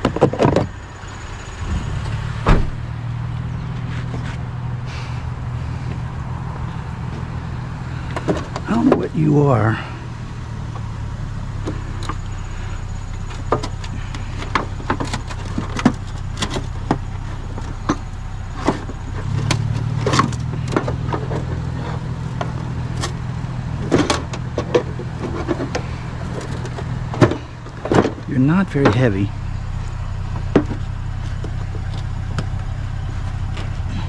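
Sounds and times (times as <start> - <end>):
vehicle engine idling: 0.0 - 34.0
sharp clicks and knocks: 13.3 - 23.2, 23.8 - 29.2.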